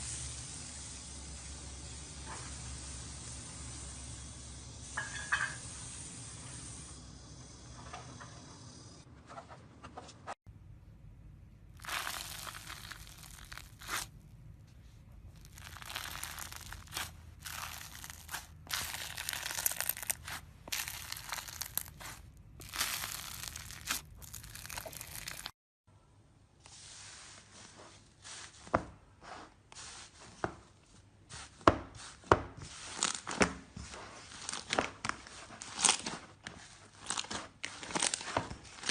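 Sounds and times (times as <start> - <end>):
slime squishing softly: 11.6 - 25.5
slime crackling and tearing: 11.7 - 14.2, 15.3 - 25.5, 36.9 - 38.9.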